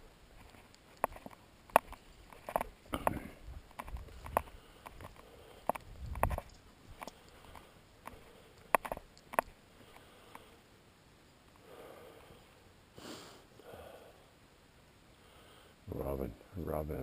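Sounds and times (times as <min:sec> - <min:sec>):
sharp clicks: 0:00.4 - 0:10.5
person sniffing: 0:13.0 - 0:14.0.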